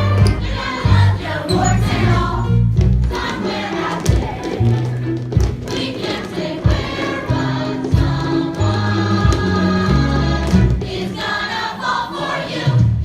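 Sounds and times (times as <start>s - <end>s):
bass line: 0.0s - 3.1s
chorus singing: 0.0s - 13.0s
steady drum beat: 6.6s - 7.3s.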